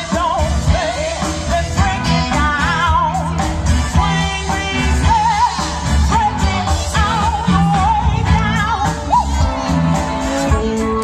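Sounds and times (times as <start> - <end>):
woman singing with vibrato: 0.0 - 10.5
blues band playing: 0.0 - 11.0.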